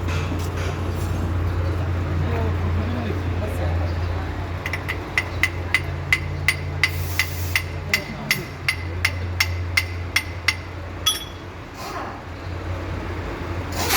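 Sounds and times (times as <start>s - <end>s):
hammer striking metal: 4.7s - 11.5s.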